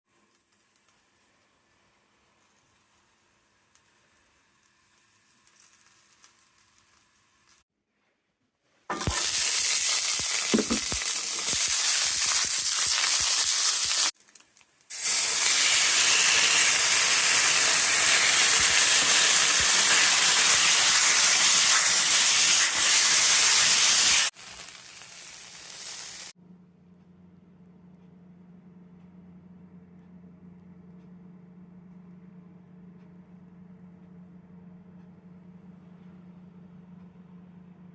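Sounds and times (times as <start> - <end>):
meat sizzling in a hot pan: 5.0 - 7.6, 8.9 - 14.2, 14.9 - 26.3.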